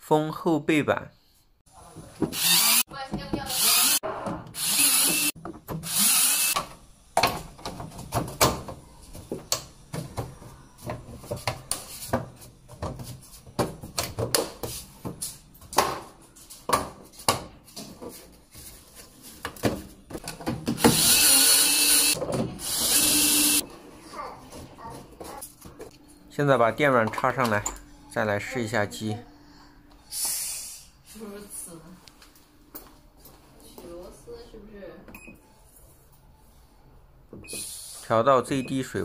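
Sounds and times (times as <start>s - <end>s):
power screwdriver driving screws: 2.4s - 2.8s, 3.5s - 4.0s, 4.6s - 6.6s, 20.8s - 23.6s.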